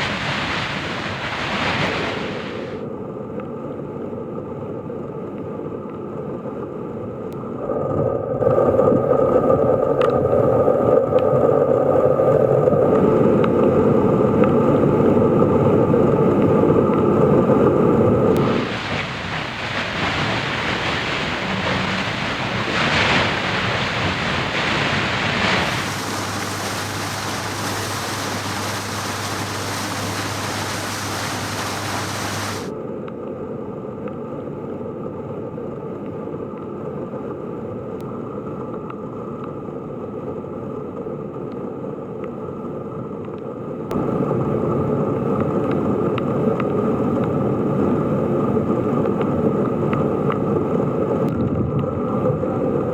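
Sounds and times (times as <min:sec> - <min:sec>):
rushing floodwater: 0:00.0 - 0:02.8, 0:18.3 - 0:32.7
wind on microphone: 0:00.0 - 0:02.8, 0:07.6 - 0:32.7
rain: 0:00.0 - 0:32.7, 0:43.4 - 0:52.9
low hum: 0:17.5 - 0:32.7.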